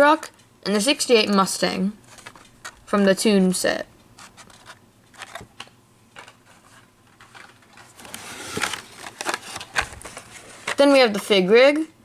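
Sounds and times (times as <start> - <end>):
packaging crinkling: 2.0 - 3.1, 4.0 - 11.0.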